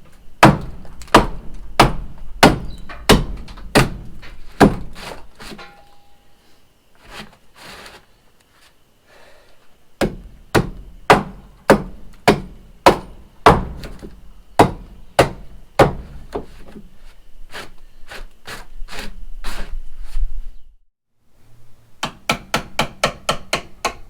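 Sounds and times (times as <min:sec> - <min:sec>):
hammer striking timber: 0:00.4 - 0:05.0, 0:10.0 - 0:16.5, 0:22.0 - 0:24.0.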